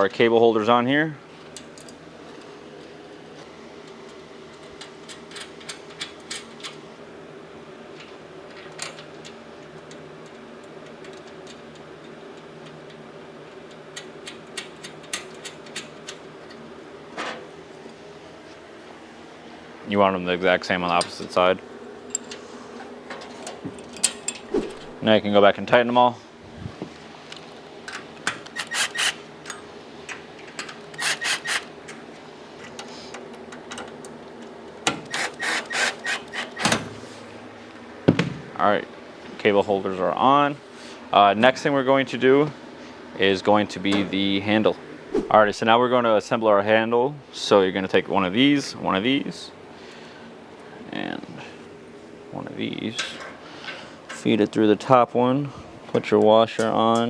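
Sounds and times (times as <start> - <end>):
steady low hum: 13.4 - 35.1, 36.3 - 57.0
ratchet wrench clicking: 28.4 - 29.2, 30.9 - 31.7.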